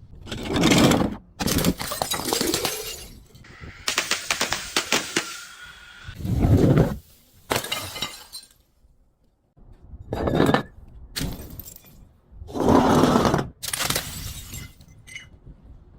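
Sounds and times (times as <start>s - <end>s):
glass bottles shattering: 1.4s - 3.4s, 7.4s - 8.7s, 11.2s - 12.0s, 13.6s - 15.4s.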